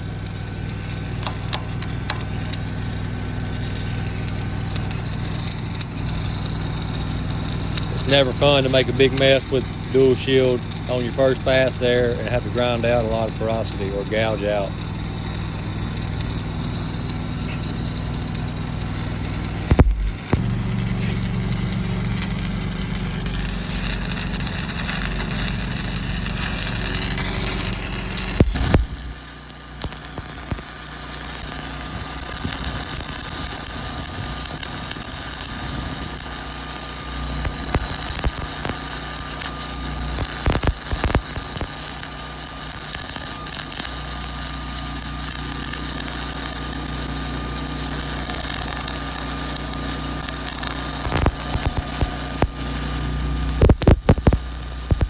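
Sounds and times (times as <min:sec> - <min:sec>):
crackling hiss: 0:00.0 - 0:55.0
welder engine running: 0:00.0 - 0:55.0.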